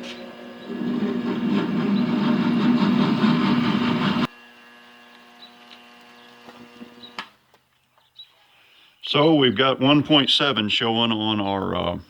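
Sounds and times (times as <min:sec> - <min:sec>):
lathe drill cutting steel: 0:00.0 - 0:04.3
lathe motor hum: 0:00.0 - 0:07.1.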